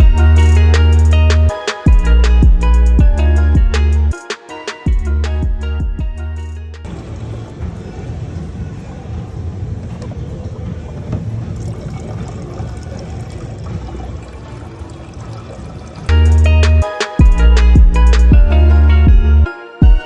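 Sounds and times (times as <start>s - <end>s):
water running and pouring: 11.3s - 16.4s.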